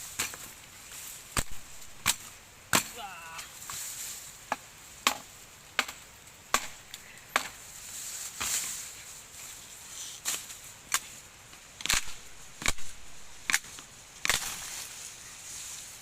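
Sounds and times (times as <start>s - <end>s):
steady high hiss: 0.0s - 16.0s
sharp chopping strikes: 1.4s - 3.4s, 4.5s - 7.6s, 11.8s - 14.7s.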